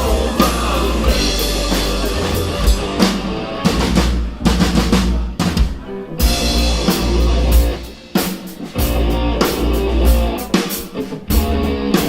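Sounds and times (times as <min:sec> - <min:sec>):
steady bass line: 0:00.0 - 0:10.5, 0:11.3 - 0:12.0
instrumental rock music: 0:00.0 - 0:12.0.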